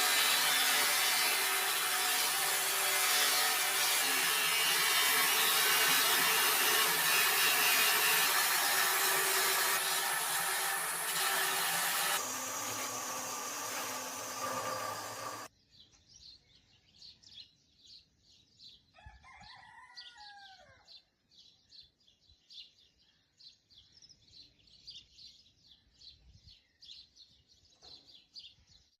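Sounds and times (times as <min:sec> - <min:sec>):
power tool rasping: 0:00.0 - 0:15.5
rooster crowing: 0:19.0 - 0:20.8.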